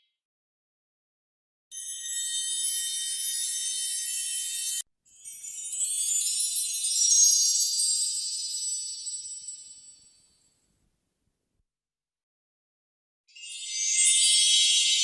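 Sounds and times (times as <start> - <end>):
magical twinkling shimmer: 1.8 - 10.3, 13.4 - 15.0.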